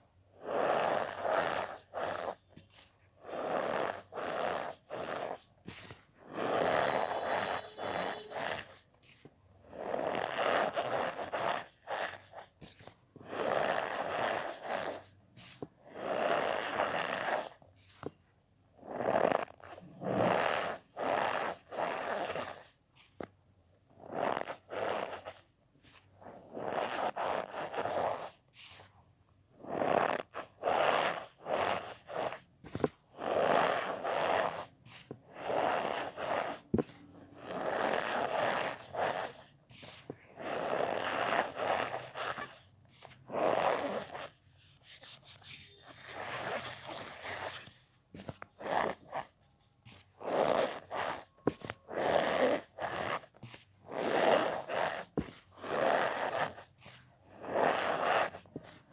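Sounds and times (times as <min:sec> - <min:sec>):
cornstarch squeaking and crunching: 0:06.3 - 0:08.8, 0:45.4 - 0:47.9.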